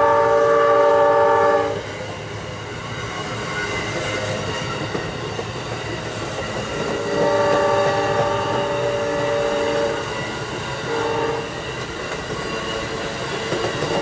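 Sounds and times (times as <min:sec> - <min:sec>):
train air horn blast: 0:00.0 - 0:01.8, 0:07.0 - 0:10.1, 0:10.9 - 0:11.6
train rail and wheel noise: 0:00.0 - 0:14.0.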